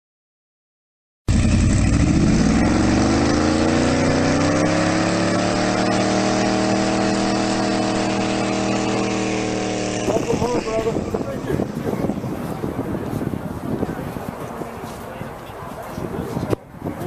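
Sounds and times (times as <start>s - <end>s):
car engine revving: 1.3s - 11.8s.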